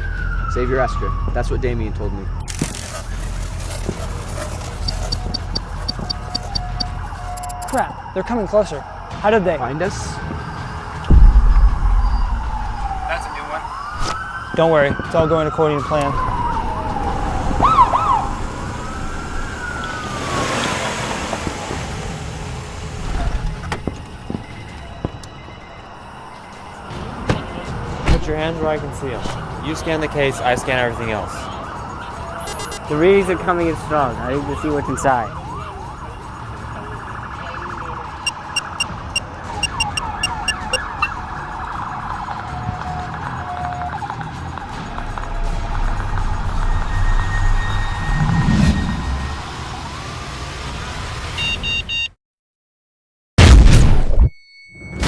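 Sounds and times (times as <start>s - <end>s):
police siren wailing and yelping: 0.0s - 9.2s, 12.0s - 23.3s, 29.4s - 47.3s
short high electronic beeps: 4.8s - 7.8s, 32.4s - 32.8s, 38.2s - 39.0s, 39.6s - 41.2s.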